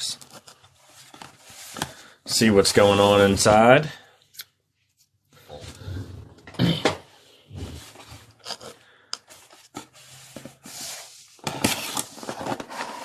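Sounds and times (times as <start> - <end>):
cardboard scraping and rustling: 7.6 - 13.0.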